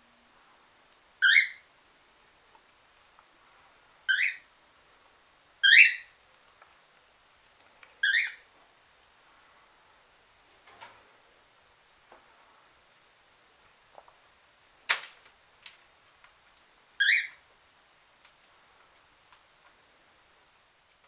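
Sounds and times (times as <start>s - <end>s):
cockatiel calling: 1.2s - 1.7s, 4.1s - 4.5s, 5.6s - 6.2s, 8.0s - 8.4s, 17.0s - 17.4s.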